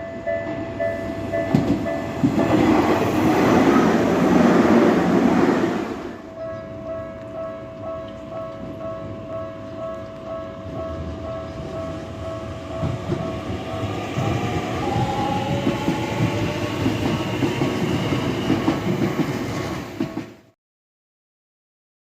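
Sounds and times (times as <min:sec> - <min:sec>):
train wheels clacking over rail joints: 0:01.3 - 0:03.0.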